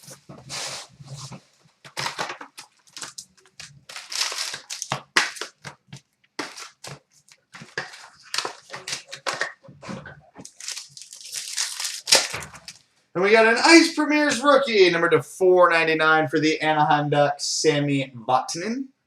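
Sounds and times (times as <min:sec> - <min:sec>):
card packs torn and crinkled: 0:01.9 - 0:09.6, 0:10.4 - 0:12.8.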